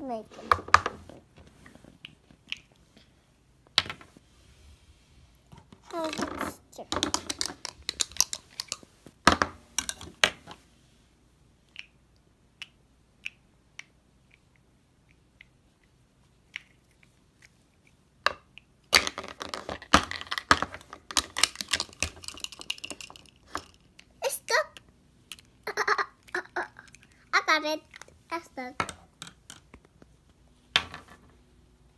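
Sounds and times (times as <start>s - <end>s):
plastic toy pieces clattering: 6.0s - 8.8s, 18.9s - 23.9s.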